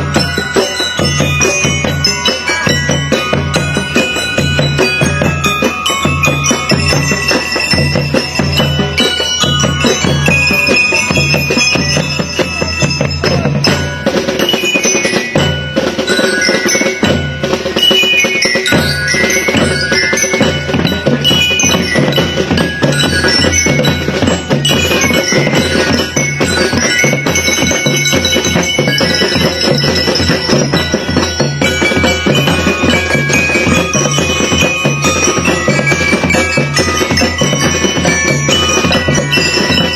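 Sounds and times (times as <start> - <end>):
bell-like mallet percussion: 0.0 - 39.9.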